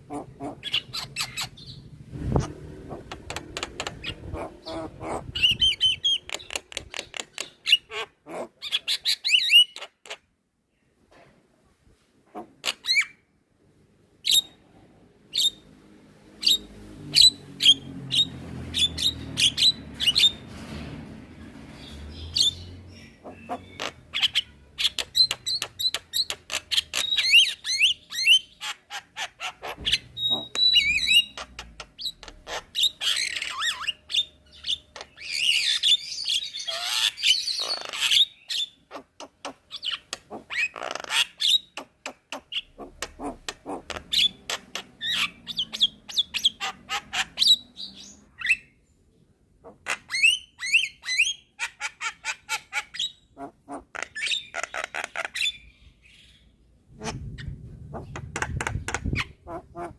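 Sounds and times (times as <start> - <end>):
harsh rasping bird squawks: 0.0 - 1.7, 2.3 - 6.6, 7.3 - 10.2, 22.4 - 34.0, 35.0 - 47.7, 57.0 - 59.9
bird clicks and whistles: 24.9 - 27.4.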